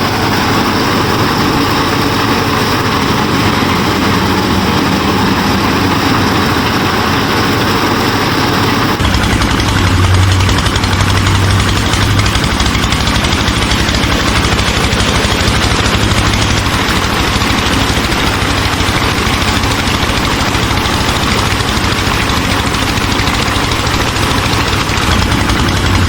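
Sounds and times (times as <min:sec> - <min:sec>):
small motor running: 0:00.0 - 0:26.0.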